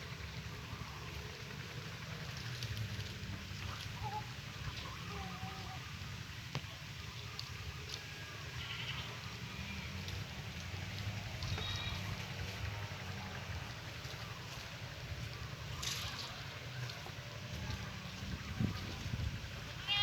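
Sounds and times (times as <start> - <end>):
steady low hum: 0.0 - 20.0
goats bleating: 8.5 - 10.0, 11.4 - 13.2, 19.7 - 20.0.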